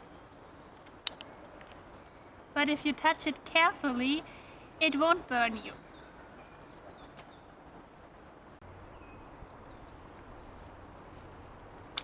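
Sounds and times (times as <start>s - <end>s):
distant birds chirping: 0.0s - 12.0s
sharp click: 0.8s - 1.3s.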